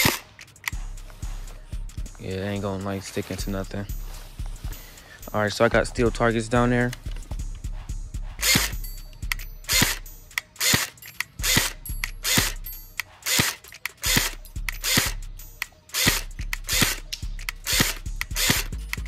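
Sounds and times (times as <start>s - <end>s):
airsoft gun firing single shots: 0.0s - 0.3s.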